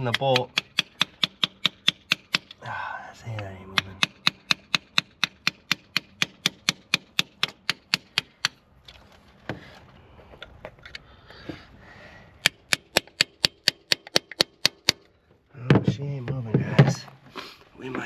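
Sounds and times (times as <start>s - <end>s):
hammer tapping on metal bolt: 0.0s - 2.6s.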